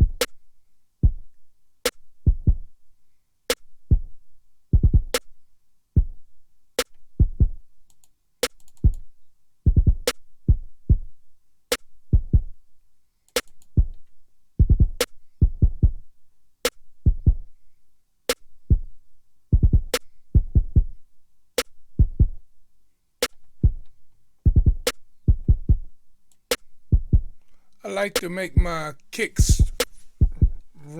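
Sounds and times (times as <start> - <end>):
deep kick drums: 4.8 - 5.1, 9.7 - 11.0, 14.6 - 16.0, 17.0 - 17.4, 19.6 - 20.9, 22.0 - 22.4, 24.5 - 25.9, 26.9 - 27.4, 29.4 - 30.7.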